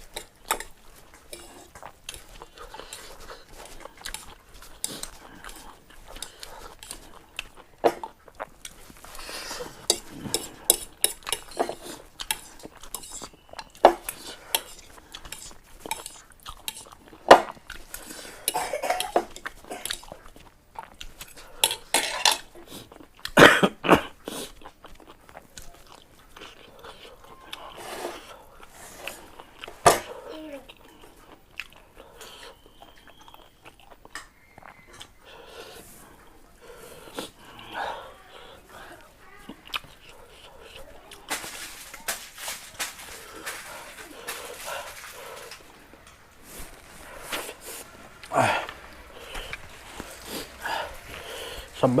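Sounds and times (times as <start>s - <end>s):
chewing: 0.0s - 23.4s, 24.0s - 52.0s
slurping noodles: 43.2s - 51.9s.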